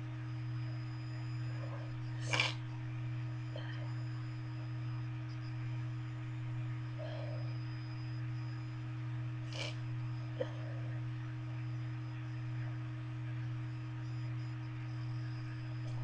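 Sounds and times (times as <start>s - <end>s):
low electrical hum: 0.0s - 16.0s
person sniffing: 2.2s - 2.6s.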